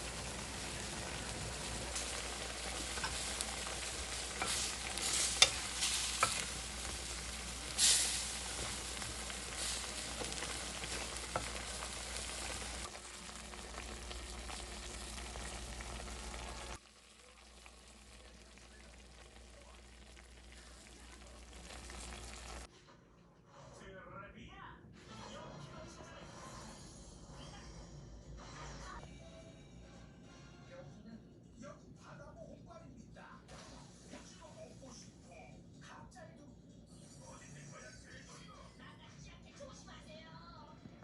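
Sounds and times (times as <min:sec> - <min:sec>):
pancakes sizzling in oil: 0:00.0 - 0:22.7.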